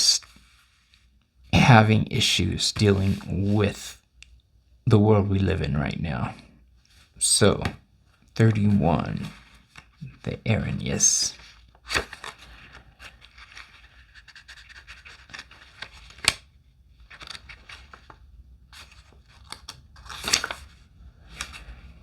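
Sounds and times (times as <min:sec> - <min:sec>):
cards scraping and rustling: 0:02.7 - 0:03.8, 0:08.4 - 0:22.0.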